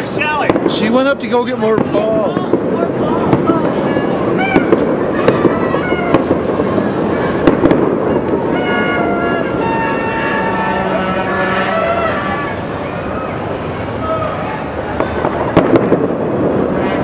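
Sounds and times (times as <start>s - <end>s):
fireworks crackling and popping: 0.0s - 17.0s
fireworks whistling: 0.0s - 17.0s
steady pitched tone: 3.5s - 14.0s.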